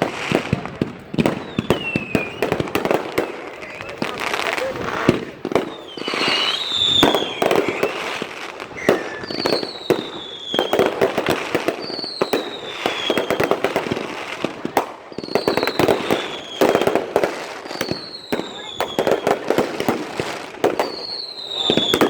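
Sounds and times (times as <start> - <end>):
firecrackers crackling: 0.0 - 22.0
falling high whistle: 1.3 - 2.7, 5.0 - 10.9.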